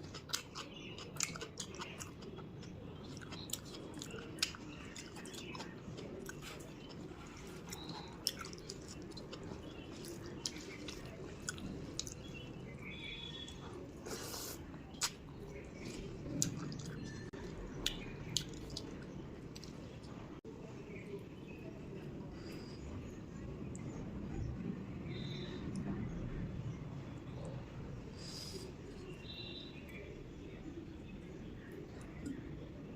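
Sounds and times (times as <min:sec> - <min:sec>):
person chewing: 0:00.0 - 0:12.4, 0:13.4 - 0:19.8
low background noise: 0:00.0 - 0:32.9.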